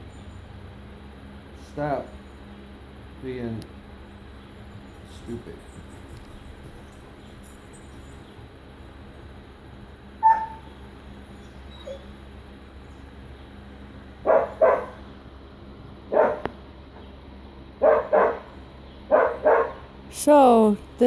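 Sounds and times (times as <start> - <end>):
dog barking: 10.2 - 10.7, 14.2 - 15.0, 16.1 - 16.5, 17.8 - 19.9.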